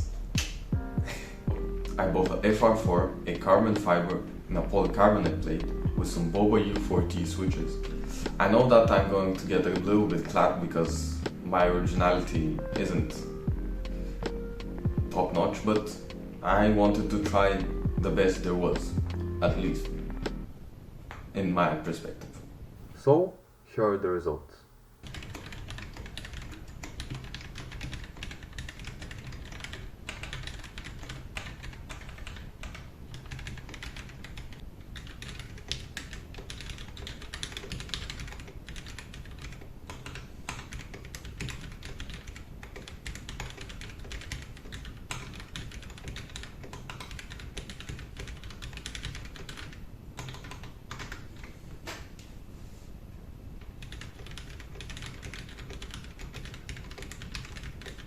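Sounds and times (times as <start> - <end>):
mechanical keyboard typing: 25.0 - 51.5, 53.8 - 58.0.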